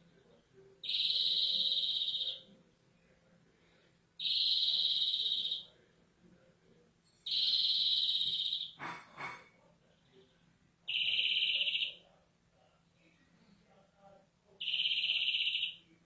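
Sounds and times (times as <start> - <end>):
finch singing buzzy trills: 10.9 - 12.0.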